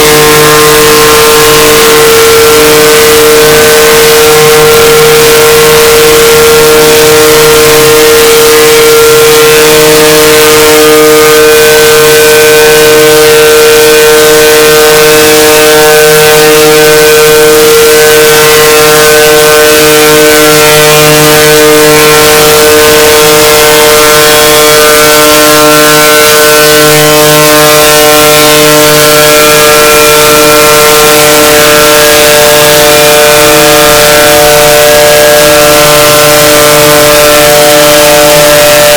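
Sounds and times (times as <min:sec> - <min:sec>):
slowed voice drone: 0:00.0 - 0:38.9.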